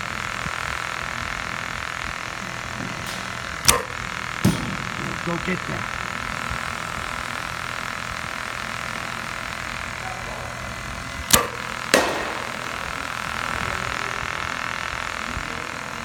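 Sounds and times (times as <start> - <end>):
steady background hum: 0.0 - 16.0
baseball bat cracks: 2.4 - 5.5, 10.0 - 14.2.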